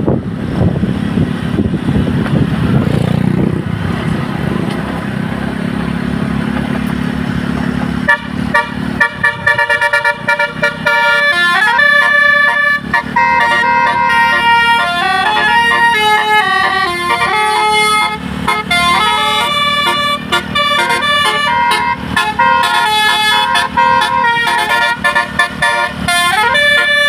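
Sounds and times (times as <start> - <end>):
engine and road noise: 0.0 - 27.0
musical air horn melody: 8.0 - 27.0.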